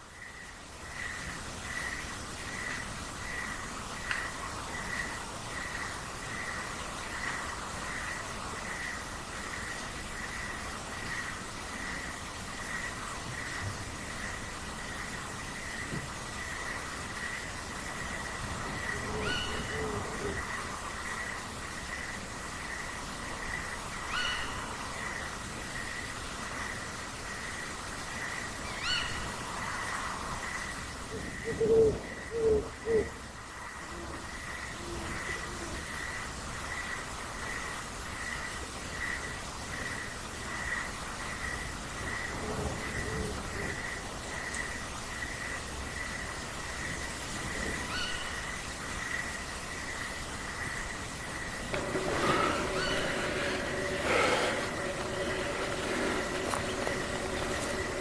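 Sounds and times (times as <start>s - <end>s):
steady hiss: 51.6s - 58.0s
short rising bird calls: 51.8s - 58.0s.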